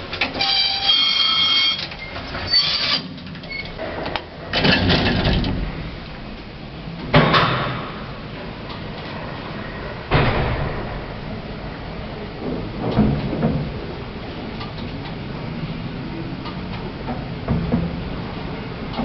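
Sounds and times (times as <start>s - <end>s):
lift clattering and rumbling: 0.0s - 19.0s
squealing ringing metal tone: 0.4s - 1.9s.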